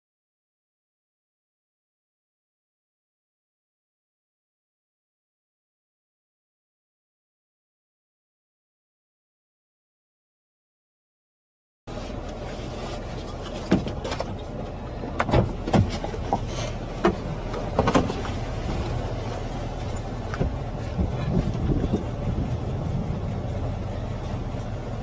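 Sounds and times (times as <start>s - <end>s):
car road and engine noise: 11.9s - 25.0s.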